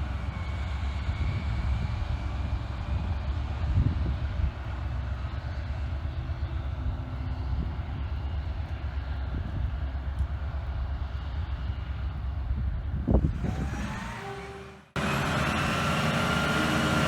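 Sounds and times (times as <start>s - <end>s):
garbage truck engine rumbling: 12.9s - 17.0s.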